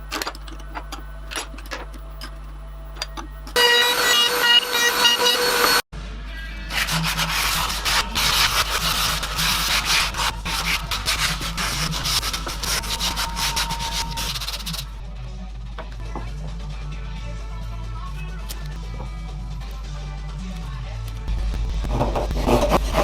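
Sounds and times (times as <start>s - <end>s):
wood being sanded: 3.6s - 5.8s, 6.7s - 14.9s, 22.0s - 23.0s
loud whining tone: 3.6s - 5.9s
background music: 6.0s - 23.0s.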